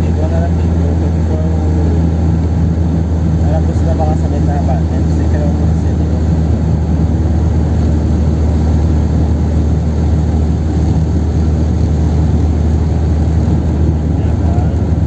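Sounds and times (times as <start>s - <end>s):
car engine and road drone: 0.0s - 15.0s.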